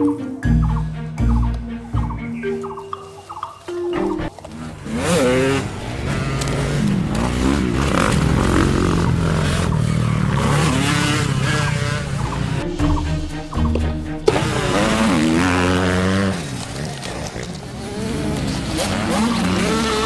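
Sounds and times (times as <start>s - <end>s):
vehicle engine revving: 4.2s - 20.0s.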